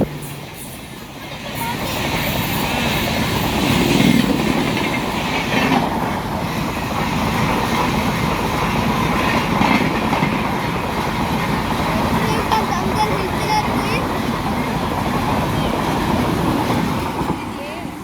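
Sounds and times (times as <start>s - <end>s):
train wheels rushing on rails: 0.0s - 18.0s.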